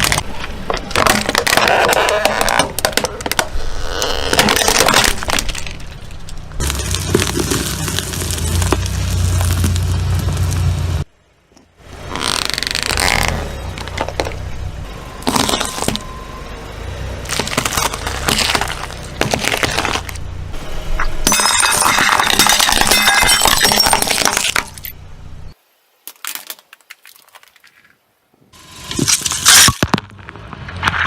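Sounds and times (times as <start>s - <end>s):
low engine hum: 5.5s - 12.1s, 12.9s - 21.2s
tyre crushing objects: 6.6s - 10.8s, 15.2s - 16.2s, 17.2s - 20.2s.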